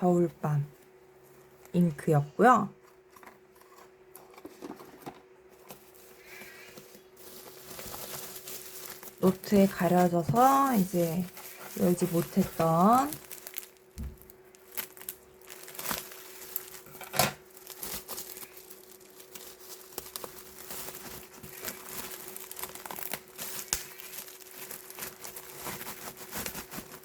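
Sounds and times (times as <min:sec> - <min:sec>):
faint steady hum: 0:00.0 - 0:27.0
packaging crinkling and tearing: 0:03.0 - 0:27.0.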